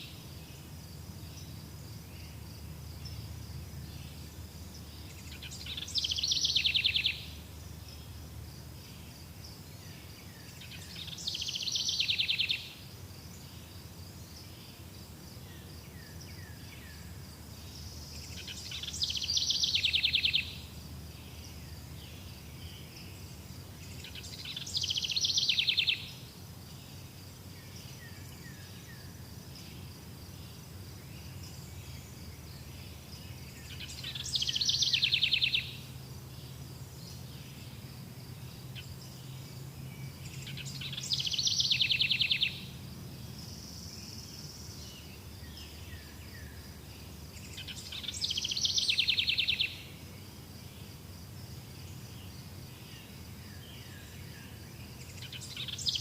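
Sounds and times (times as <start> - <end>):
high insect drone: 0.0 - 56.0
songbird trilling: 5.0 - 7.4, 10.7 - 12.8, 18.2 - 20.7, 23.9 - 26.2, 33.6 - 35.9, 40.3 - 42.7, 47.4 - 49.9, 55.0 - 56.0.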